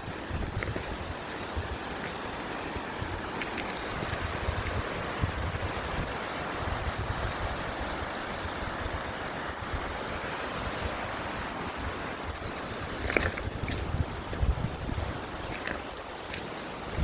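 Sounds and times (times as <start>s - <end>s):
wind buffeting microphone: 0.2s - 1.9s, 2.9s - 10.0s, 11.8s - 16.1s.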